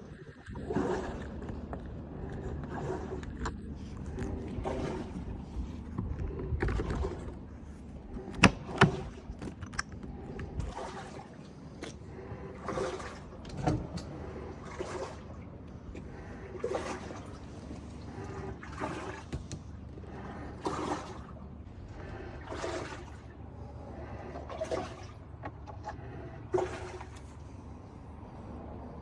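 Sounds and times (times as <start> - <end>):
refrigerator fittings clattering: 8.1 - 10.8, 12.7 - 14.2.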